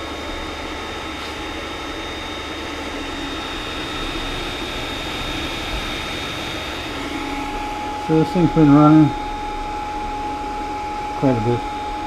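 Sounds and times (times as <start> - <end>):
printer fan hum: 0.0 - 12.0
high whine: 2.7 - 12.0.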